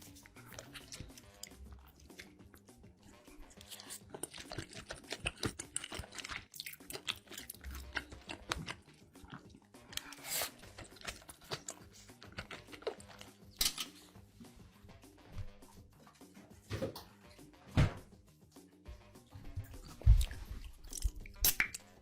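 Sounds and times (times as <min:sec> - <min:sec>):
crunchy chewing of crisp food: 0:00.0 - 0:13.5.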